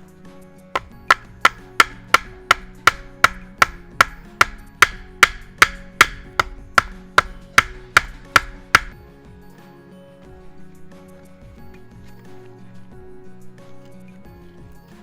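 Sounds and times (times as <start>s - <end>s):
knife chopping on wooden board: 0.8s - 9.0s.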